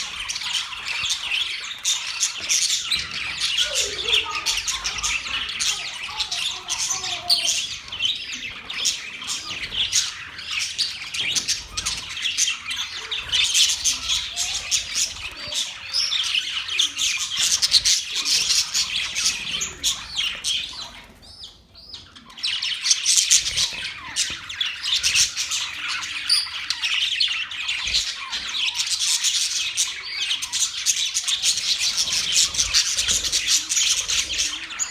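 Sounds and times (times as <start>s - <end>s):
budgerigars chattering: 0.0s - 34.9s.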